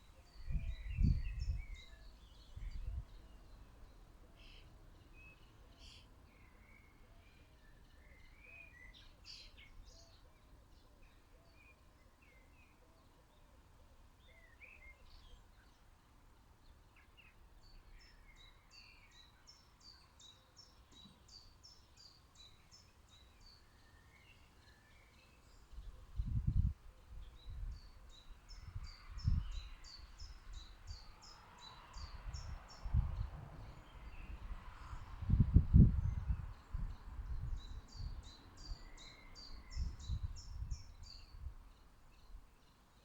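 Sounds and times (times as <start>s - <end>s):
small birds chirping: 16.5s - 43.0s.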